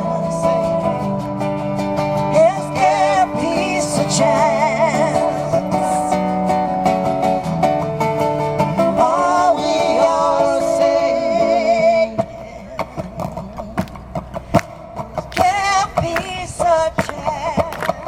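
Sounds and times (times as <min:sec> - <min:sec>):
acoustic guitar: 0:00.0 - 0:18.0
woman singing with vibrato: 0:02.3 - 0:06.2, 0:15.3 - 0:18.0.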